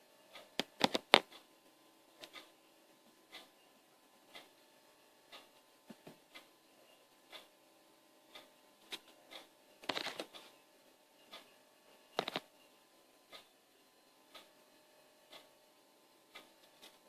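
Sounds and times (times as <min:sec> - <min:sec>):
clock ticking: 0:00.3 - 0:01.5, 0:02.2 - 0:02.5, 0:03.3 - 0:03.6, 0:04.2 - 0:05.6, 0:06.2 - 0:06.6, 0:07.2 - 0:07.6, 0:08.3 - 0:10.5, 0:11.3 - 0:12.5, 0:13.3 - 0:13.5, 0:14.2 - 0:16.8
sharp clicks: 0:00.6 - 0:01.4, 0:12.2 - 0:12.5.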